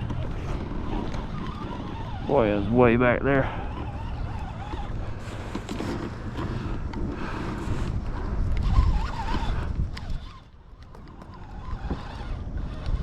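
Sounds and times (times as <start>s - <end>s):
water moving around kayak: 0.0s - 13.0s
wind buffeting microphone: 0.0s - 13.0s.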